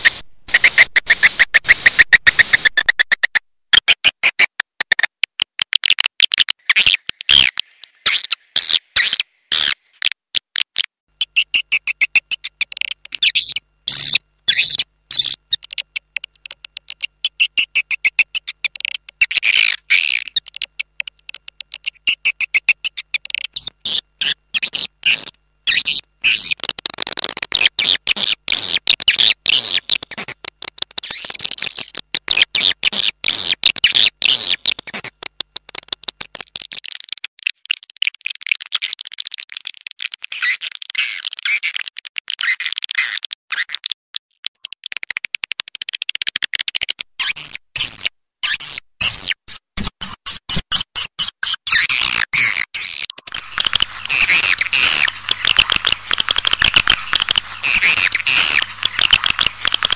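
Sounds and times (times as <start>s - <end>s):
swiftlet chirps and twittering: 0.0s - 3.4s, 11.2s - 26.6s, 53.1s - 59.9s.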